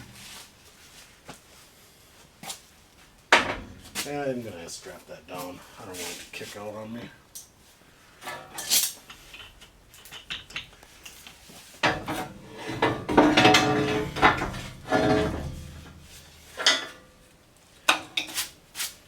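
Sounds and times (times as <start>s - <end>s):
metal parts clanking: 11.8s - 17.1s.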